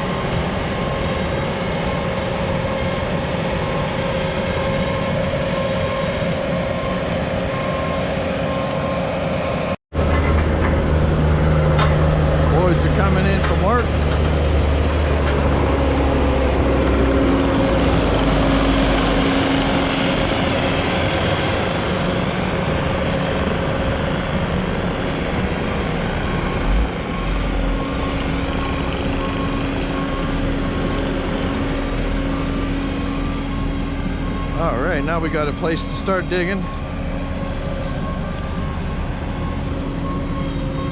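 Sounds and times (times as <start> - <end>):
large vehicle engine running: 0.0 - 40.9
backup alarm beeping: 4.6 - 9.2, 26.2 - 31.5, 32.2 - 40.9.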